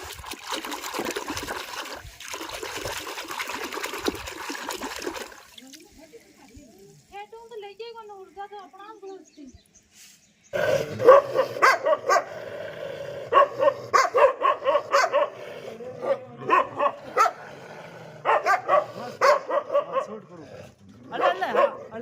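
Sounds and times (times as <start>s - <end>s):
dog barking: 10.9s - 12.4s, 13.3s - 17.4s, 18.2s - 20.2s, 21.1s - 22.0s.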